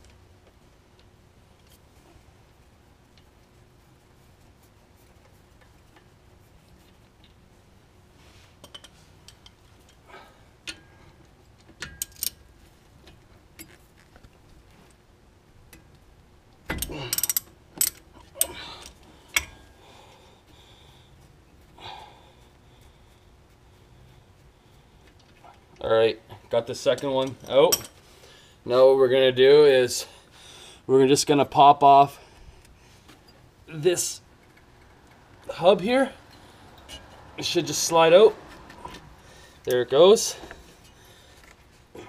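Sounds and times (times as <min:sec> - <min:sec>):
wrench metal clicks: 0:16.7 - 0:19.6.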